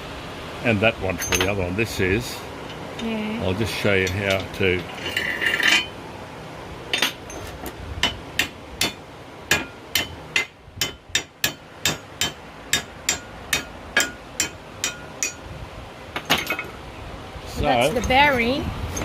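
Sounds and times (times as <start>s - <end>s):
hammer striking metal: 6.9s - 15.4s.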